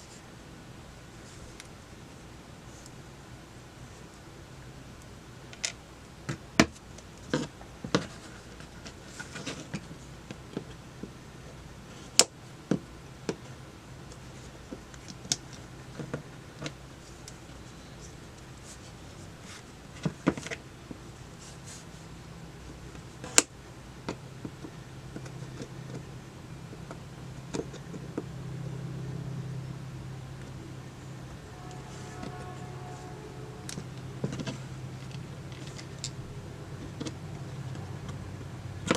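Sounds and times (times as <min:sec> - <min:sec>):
low hum: 0:21.9 - 0:38.9.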